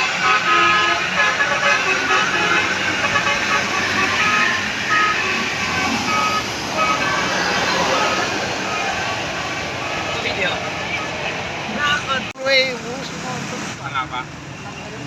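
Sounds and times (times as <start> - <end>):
multi-tone musical air horn: 0.0 - 8.8
bus engine and road noise: 0.0 - 15.0.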